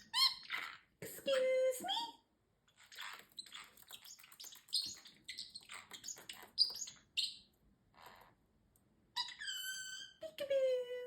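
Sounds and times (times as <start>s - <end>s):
parrot chirping and chattering: 0.0s - 1.4s, 2.7s - 8.4s, 9.2s - 10.2s.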